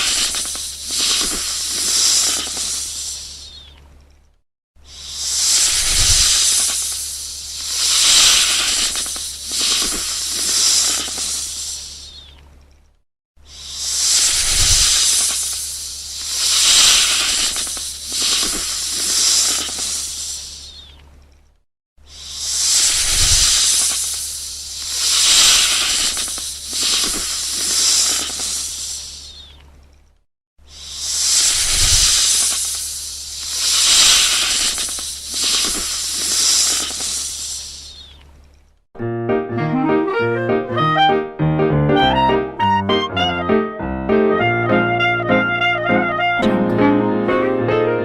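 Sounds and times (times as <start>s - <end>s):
snake hissing: 0.0s - 3.7s, 4.8s - 12.3s, 13.4s - 21.0s, 22.0s - 29.6s, 30.6s - 38.2s.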